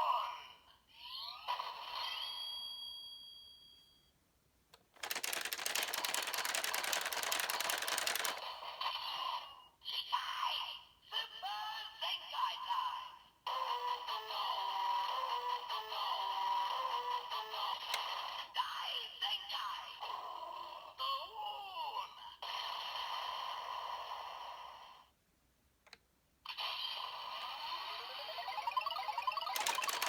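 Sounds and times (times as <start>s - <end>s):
electronic toy music: 5.0s - 8.4s, 27.9s - 30.0s
rapid-fire shooting effect: 5.0s - 8.4s, 29.6s - 30.0s.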